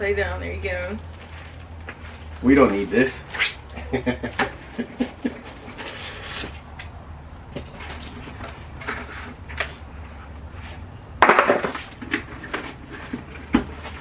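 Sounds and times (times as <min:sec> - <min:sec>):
packaging rustling scrape: 0:05.4 - 0:06.8.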